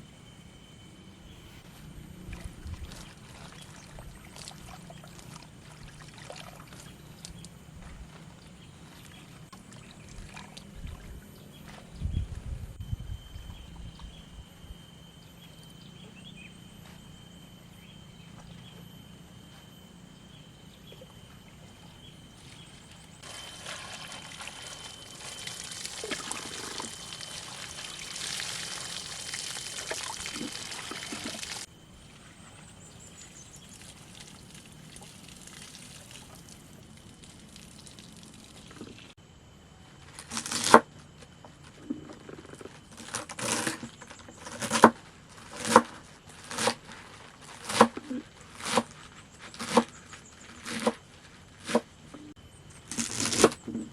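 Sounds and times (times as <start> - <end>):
water pouring: 23.2 - 31.7, 33.8 - 39.1.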